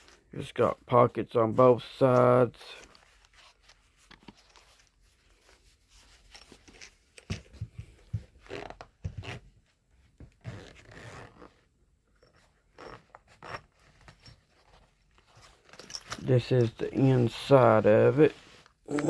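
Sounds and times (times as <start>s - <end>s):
zipper pouch being unzipped: 10.4s - 11.6s.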